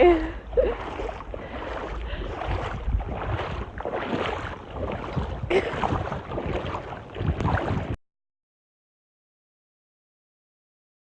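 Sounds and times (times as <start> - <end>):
water splashing as people wade: 0.0 - 8.0
wind on microphone: 0.0 - 8.0.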